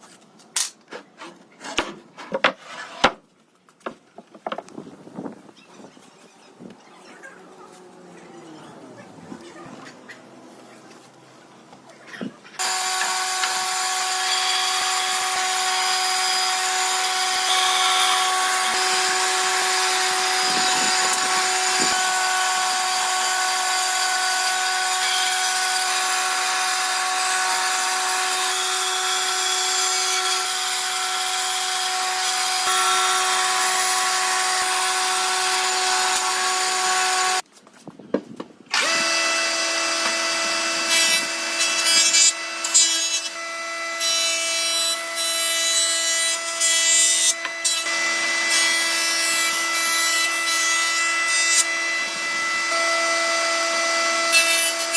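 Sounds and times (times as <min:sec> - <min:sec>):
electric power tool motor running: 0:12.6 - 0:37.4, 0:38.7 - 0:43.6.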